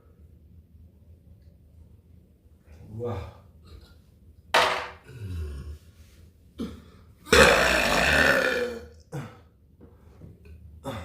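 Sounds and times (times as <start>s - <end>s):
person burping: 5.0s - 5.8s, 6.6s - 9.4s.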